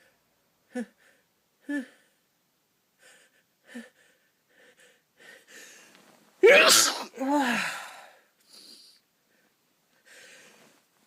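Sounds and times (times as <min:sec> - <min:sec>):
person sneezing: 0:06.4 - 0:08.0.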